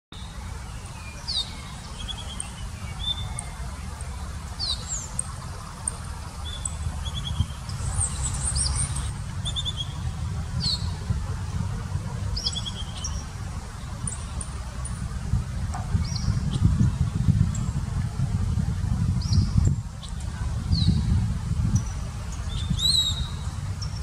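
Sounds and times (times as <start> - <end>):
bird whistled notes and trills: 0.2 - 11.0, 12.4 - 13.3, 15.9 - 17.8, 19.2 - 21.1, 21.7 - 24.0.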